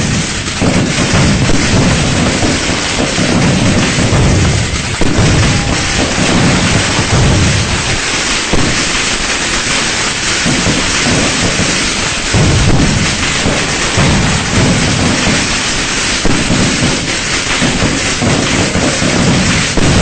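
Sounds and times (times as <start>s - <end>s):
firecrackers crackling: 0.0s - 20.0s
low rumbling booms: 0.0s - 20.0s.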